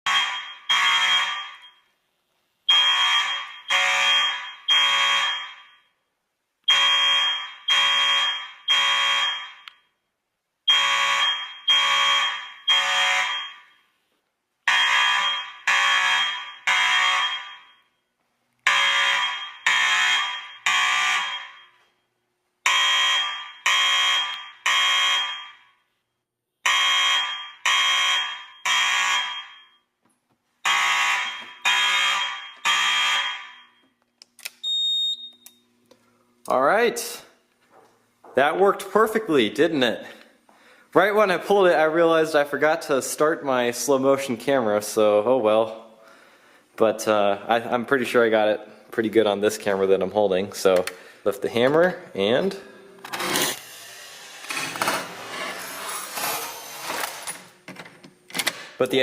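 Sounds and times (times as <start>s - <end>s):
fire alarm tones: 0.0s - 2.0s, 2.7s - 6.1s, 6.7s - 10.0s, 10.7s - 14.0s, 14.7s - 18.1s, 18.7s - 25.8s, 26.6s - 30.0s, 30.6s - 34.0s, 34.6s - 35.7s.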